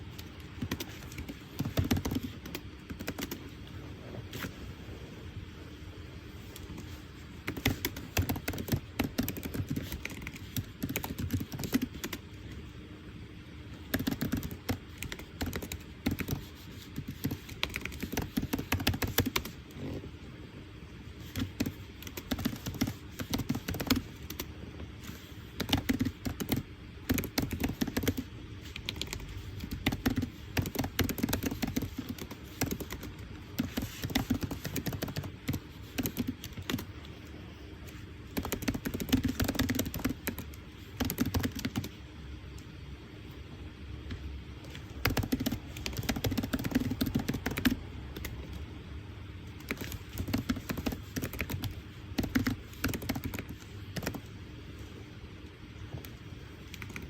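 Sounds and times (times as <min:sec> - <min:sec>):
faint steady hum: 0:00.0 - 0:57.0
typing on computer keyboard: 0:00.1 - 0:03.5, 0:06.6 - 0:12.4, 0:13.7 - 0:19.7, 0:21.2 - 0:37.1, 0:37.8 - 0:42.0, 0:44.6 - 0:48.6, 0:49.4 - 0:54.3, 0:55.9 - 0:57.0.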